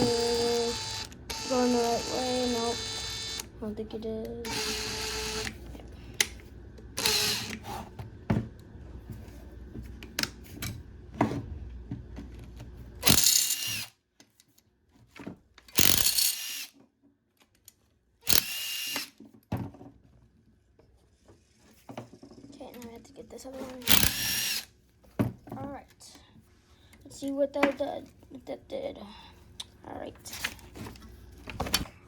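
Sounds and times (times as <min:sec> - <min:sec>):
cordless drill whining: 0:00.0 - 0:03.5, 0:04.4 - 0:05.6, 0:07.0 - 0:07.8, 0:13.0 - 0:13.9, 0:18.2 - 0:19.1, 0:23.8 - 0:24.7.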